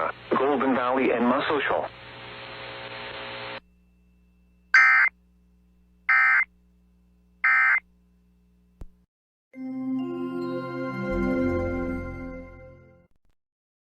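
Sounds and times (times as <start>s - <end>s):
radio hiss: 0.0s - 3.6s
digital data tone bursts: 4.8s - 5.1s.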